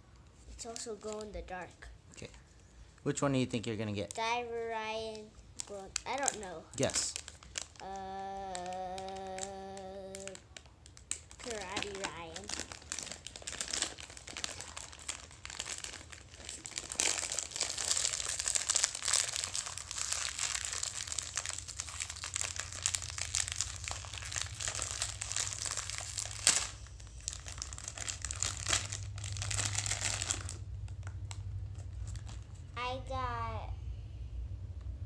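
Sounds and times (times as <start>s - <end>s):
wrapper crinkling: 5.0s - 32.8s.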